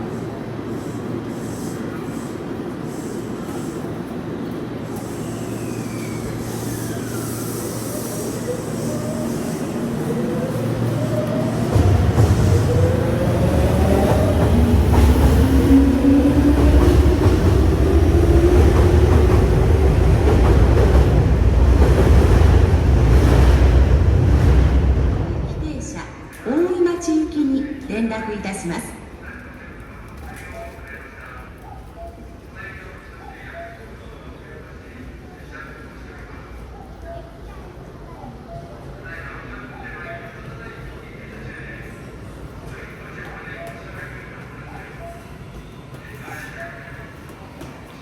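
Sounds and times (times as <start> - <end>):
wheels rumbling on rail: 0.2 - 25.6.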